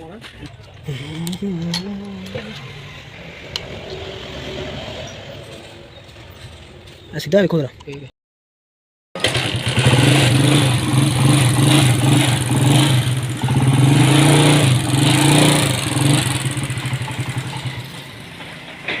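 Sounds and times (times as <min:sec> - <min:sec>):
motorcycle engine revving: 0:01.8 - 0:05.6, 0:09.2 - 0:19.0.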